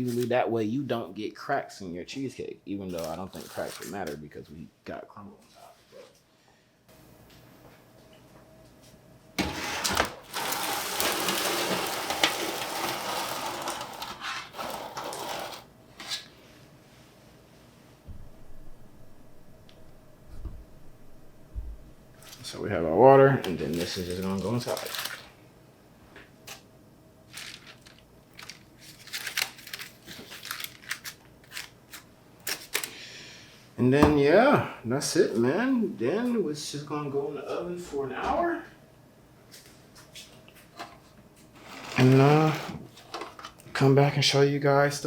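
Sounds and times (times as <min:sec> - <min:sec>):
aluminium foil crinkling: 0:02.9 - 0:04.2, 0:09.9 - 0:15.7, 0:23.4 - 0:25.4, 0:27.3 - 0:32.9.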